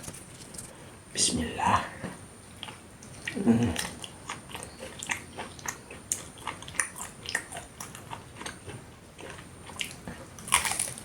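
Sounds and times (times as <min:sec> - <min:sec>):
close chewing with mouth clicks: 0:02.6 - 0:11.0.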